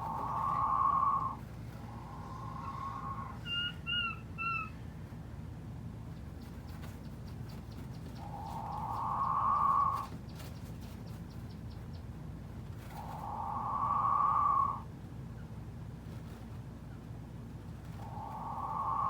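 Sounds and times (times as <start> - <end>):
quail calling: 0.0 - 4.8, 8.1 - 10.5, 12.9 - 14.9, 18.0 - 19.0.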